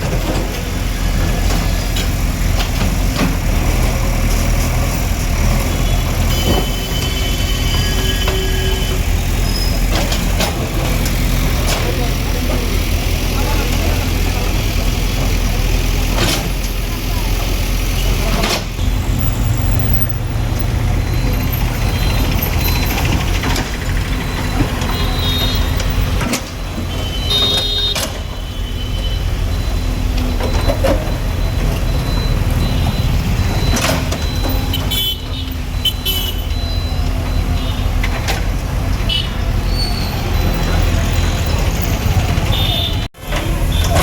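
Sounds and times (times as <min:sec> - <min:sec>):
heavy engine running: 0:00.0 - 0:44.0
road traffic: 0:00.0 - 0:44.0
short high-pitched beeps: 0:29.0 - 0:37.8.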